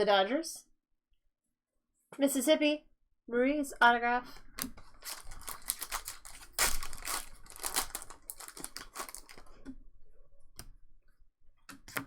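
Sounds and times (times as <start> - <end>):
card wrappers crinkling and tearing: 4.6 - 9.6.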